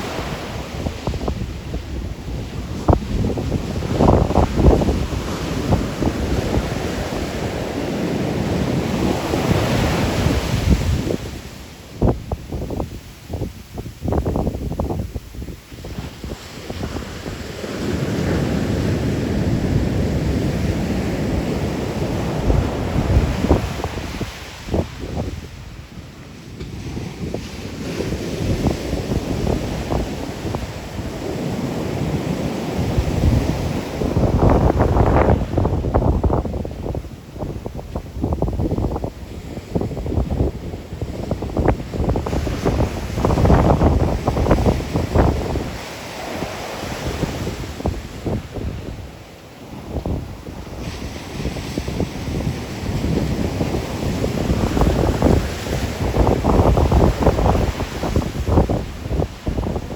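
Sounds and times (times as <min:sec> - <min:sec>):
ocean surf breaking: 0:00.0 - 0:59.9
wind buffeting microphone: 0:00.0 - 0:59.9
surf breaking on rocks: 0:28.9 - 0:39.1, 0:41.2 - 0:49.0, 0:50.8 - 0:59.9.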